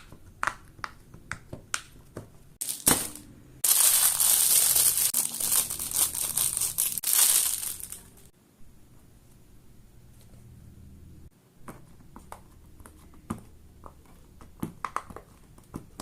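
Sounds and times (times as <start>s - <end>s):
loud crinkling and crunching: 2.6s - 8.3s.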